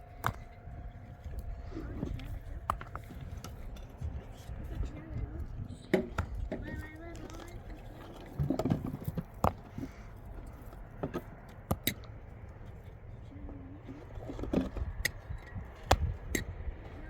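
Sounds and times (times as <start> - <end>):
hard objects knocking and scraping: 5.4 - 12.2, 13.8 - 16.5.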